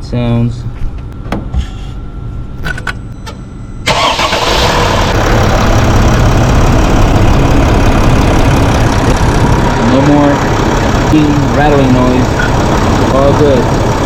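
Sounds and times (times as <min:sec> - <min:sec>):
diesel engine starting and idling: 0:03.8 - 0:14.0.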